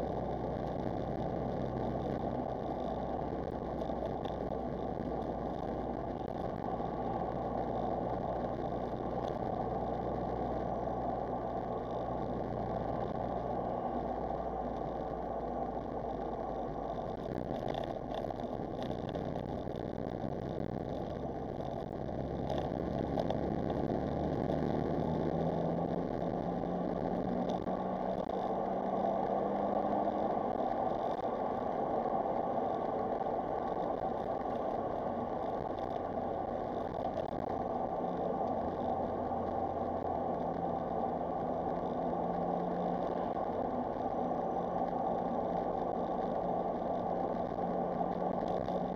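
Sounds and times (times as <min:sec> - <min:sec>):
road noise: 0:00.0 - 0:48.9.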